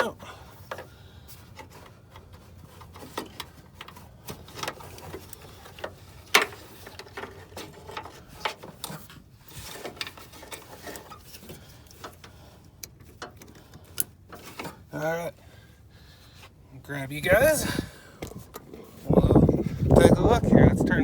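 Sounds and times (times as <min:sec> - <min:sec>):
parts clicking and knocking: 0:00.6 - 0:14.8.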